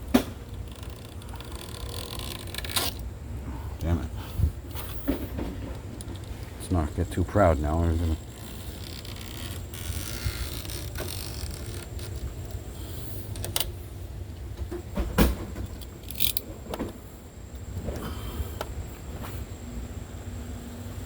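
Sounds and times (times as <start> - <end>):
clicks and scraping on screen door: 0.0 - 3.0, 4.6 - 17.2.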